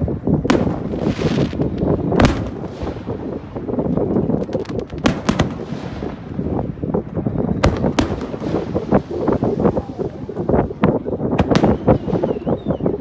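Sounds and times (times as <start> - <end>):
fireworks shells bursting: 0.3 - 10.6.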